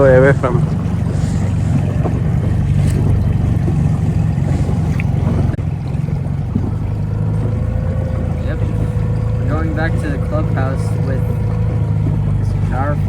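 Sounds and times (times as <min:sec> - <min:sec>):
wind noise on microphone: 0:00.0 - 0:07.8
outboard motor running: 0:00.0 - 0:13.0.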